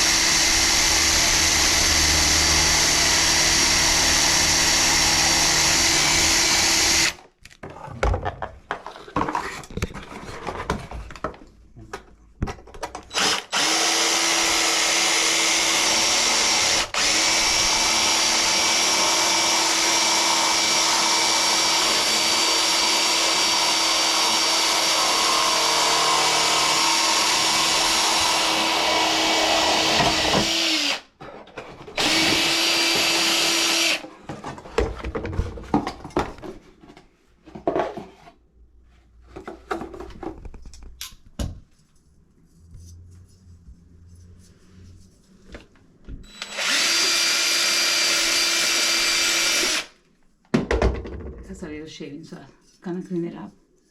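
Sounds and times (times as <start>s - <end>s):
electric drill running: 0.0s - 7.2s, 13.1s - 31.0s, 32.0s - 34.0s, 46.2s - 50.0s.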